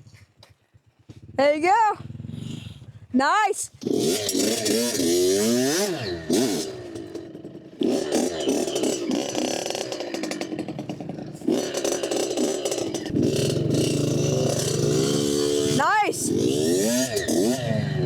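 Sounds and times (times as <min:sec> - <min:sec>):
dirt bike engine revving: 0:03.6 - 0:18.0.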